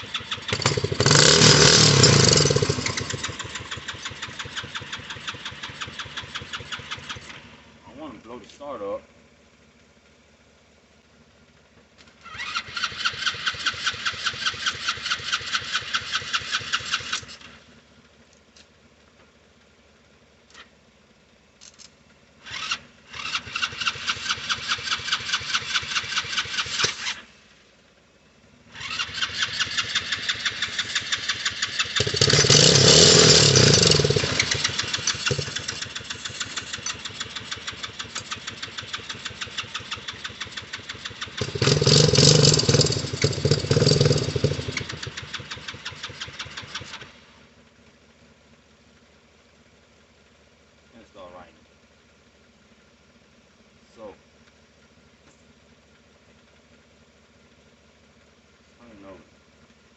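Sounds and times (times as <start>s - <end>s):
small engine cranking on starter: 0.0s - 7.6s, 12.0s - 17.7s, 21.6s - 27.3s, 28.7s - 47.4s.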